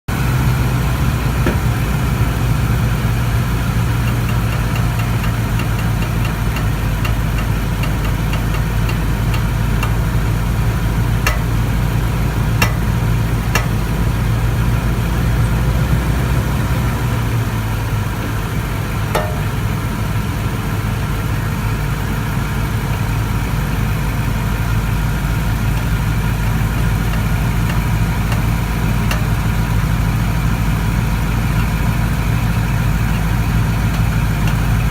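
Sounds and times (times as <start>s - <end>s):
truck engine running: 0.1s - 34.9s
sharp engine pops: 1.3s - 10.0s, 11.2s - 14.1s, 19.2s - 19.7s.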